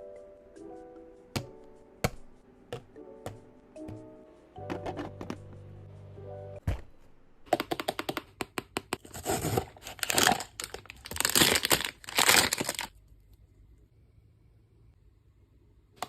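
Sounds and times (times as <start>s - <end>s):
background music: 0.0s - 7.4s
packaging torn and crinkled: 9.0s - 13.0s.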